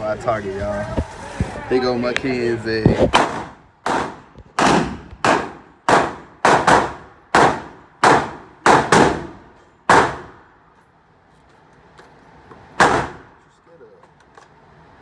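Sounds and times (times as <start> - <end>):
gunshots echoing indoors: 3.2 - 10.4, 12.8 - 13.3.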